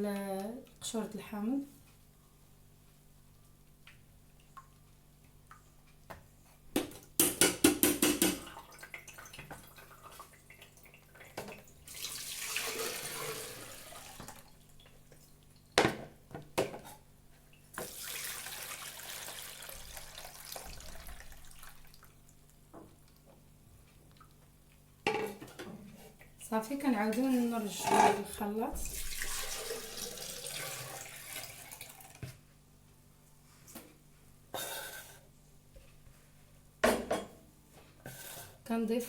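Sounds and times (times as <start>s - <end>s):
liquid pouring through a sieve: 11.9s - 14.5s, 17.8s - 22.1s, 28.8s - 32.2s.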